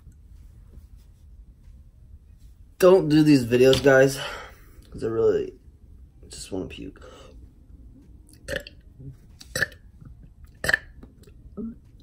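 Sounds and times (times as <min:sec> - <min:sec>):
man burping: 0:08.5 - 0:09.8, 0:10.6 - 0:10.9, 0:11.5 - 0:11.9.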